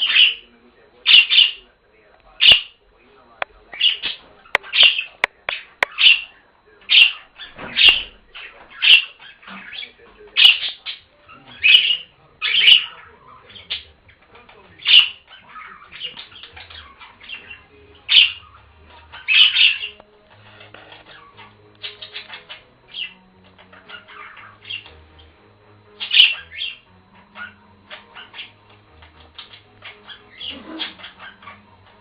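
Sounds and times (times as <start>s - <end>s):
budgerigar sharp calls: 0.0s - 1.7s, 2.4s - 2.8s, 3.8s - 20.0s, 20.6s - 32.0s
budgerigar soft chatter: 0.0s - 32.0s
sharp clicks: 3.4s - 6.0s.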